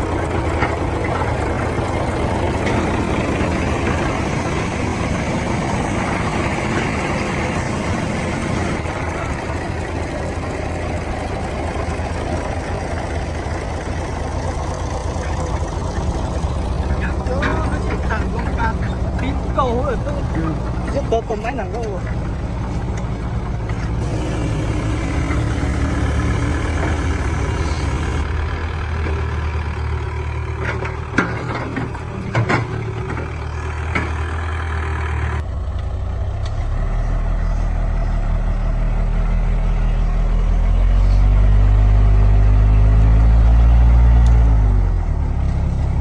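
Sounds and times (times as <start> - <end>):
heavy diesel engine running: 0.0 - 46.0.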